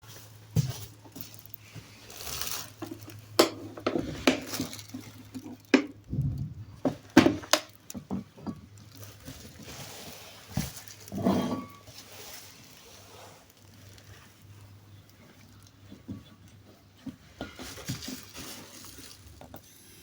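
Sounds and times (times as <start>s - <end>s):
steady low hum: 6.0s - 7.5s.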